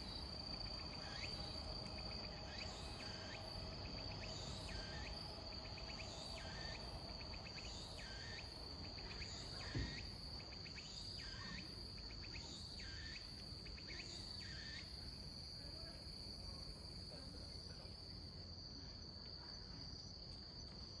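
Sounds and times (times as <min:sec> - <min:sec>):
cicada singing: 0:00.0 - 0:15.6
soft knock: 0:09.7 - 0:10.0.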